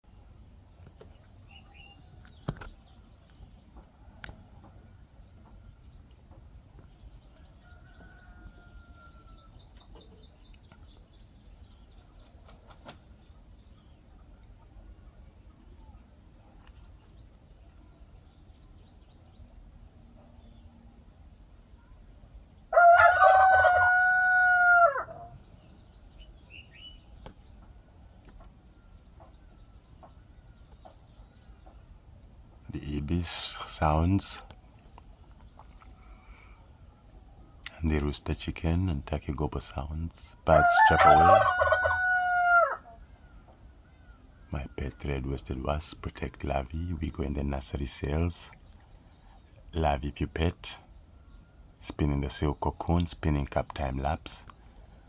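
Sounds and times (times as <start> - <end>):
faint bird chirps: 0.1 - 55.0
rooster crowing: 7.4 - 9.7, 22.7 - 25.4, 40.5 - 43.3
steady high hiss: 25.1 - 42.0, 42.8 - 55.0.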